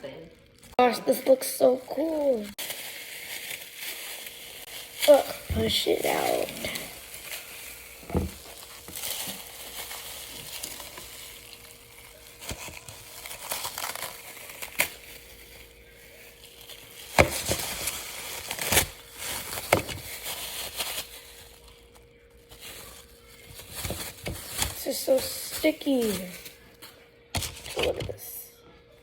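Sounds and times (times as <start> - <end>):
squishy toy goo crackling: 0.0 - 21.7.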